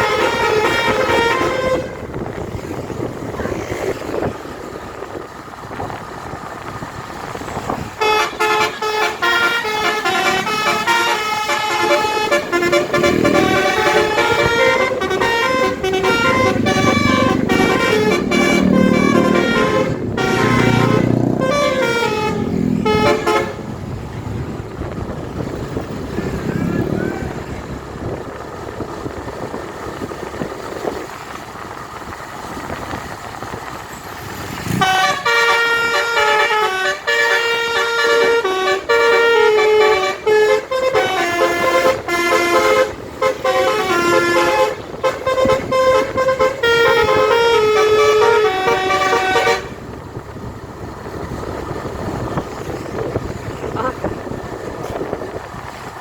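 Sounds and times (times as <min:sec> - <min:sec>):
musical air horn playing tune: 0:00.0 - 0:02.2, 0:08.0 - 0:23.7, 0:34.7 - 0:49.8
engine and road noise: 0:00.0 - 0:56.0.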